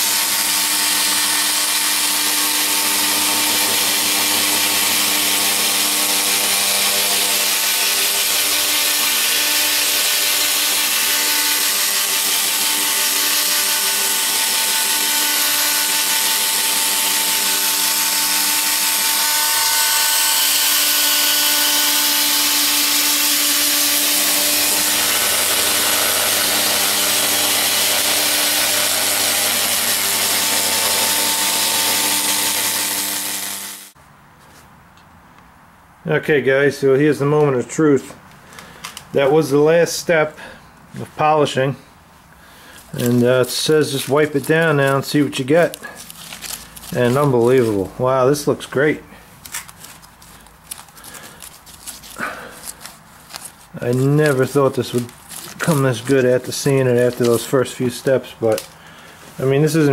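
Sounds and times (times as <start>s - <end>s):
electric drill motor whine: 0.0s - 34.0s.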